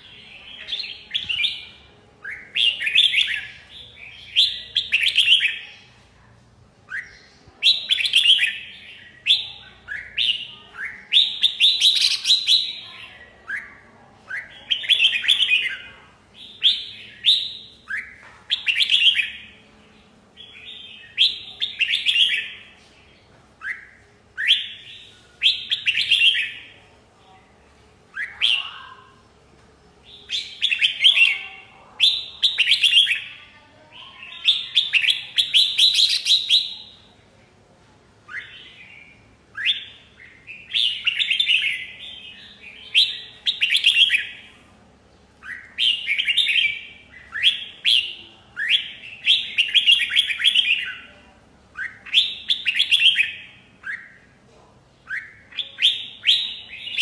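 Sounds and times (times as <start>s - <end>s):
bird singing whistled phrases: 23.6s - 26.6s, 38.3s - 40.0s, 55.1s - 57.0s.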